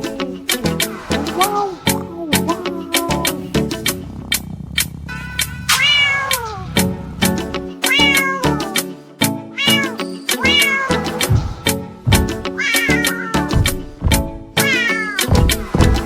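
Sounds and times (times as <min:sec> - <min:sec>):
cat meowing: 0:05.7 - 0:06.8, 0:07.8 - 0:08.8, 0:09.6 - 0:11.7, 0:12.5 - 0:13.6, 0:14.6 - 0:15.3
upbeat dance music: 0:07.2 - 0:16.0.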